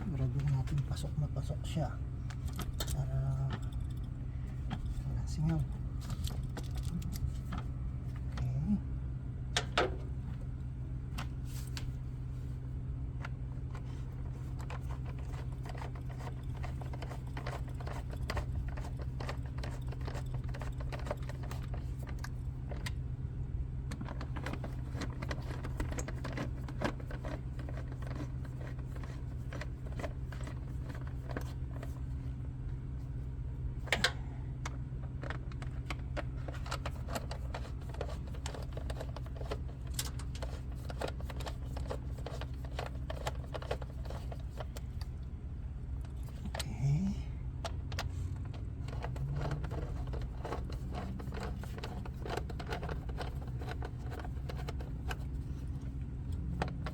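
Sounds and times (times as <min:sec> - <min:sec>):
steady low hum: 0:00.0 - 0:56.9
plastic housing clicks and rattles: 0:14.6 - 0:23.0, 0:23.9 - 0:32.0, 0:34.6 - 0:44.8, 0:47.6 - 0:55.7.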